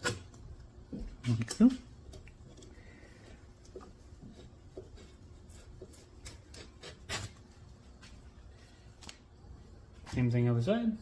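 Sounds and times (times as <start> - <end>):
knife scratching leather: 4.0 - 7.6.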